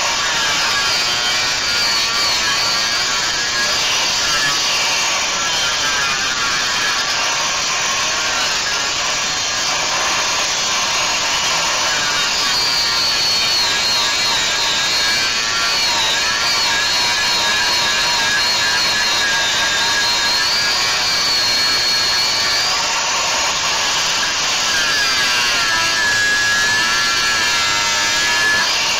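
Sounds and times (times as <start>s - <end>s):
power tool grinding metal with whine: 0.0s - 28.9s.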